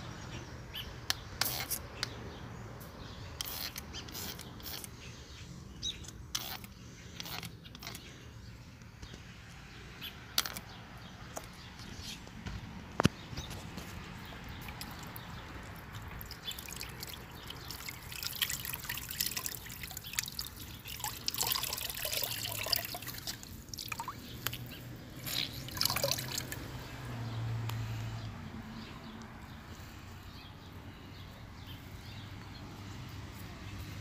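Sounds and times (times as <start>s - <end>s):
water dripping and trickling: 13.4s - 27.4s.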